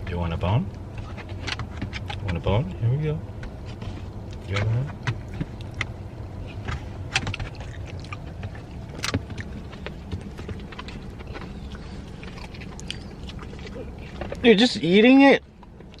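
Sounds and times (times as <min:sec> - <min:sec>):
car interior hum: 0:00.0 - 0:16.0
chicken bone being chewed: 0:05.2 - 0:14.4.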